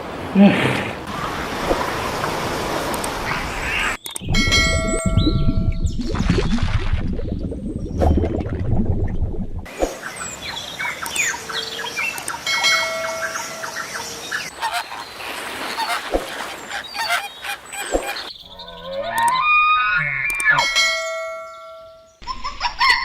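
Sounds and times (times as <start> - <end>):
dense low sound: 4.2 - 9.7
geese honking: 14.3 - 20.7.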